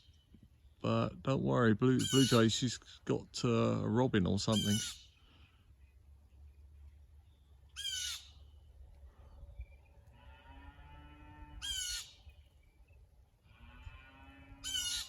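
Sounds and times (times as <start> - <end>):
blue jays harsh scolding calls: 2.0 - 2.6, 4.4 - 5.1, 7.8 - 8.4, 11.6 - 12.2, 14.6 - 15.0.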